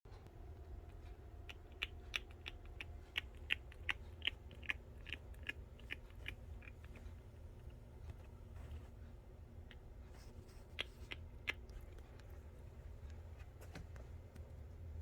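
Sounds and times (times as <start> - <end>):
hedgehog making sharp clicks: 1.5 - 7.0.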